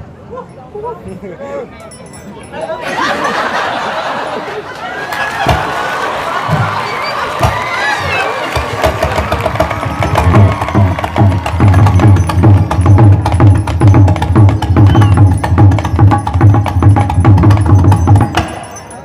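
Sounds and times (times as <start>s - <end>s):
drums: 5.3s - 19.0s
gamelan playing fast: 8.6s - 19.0s.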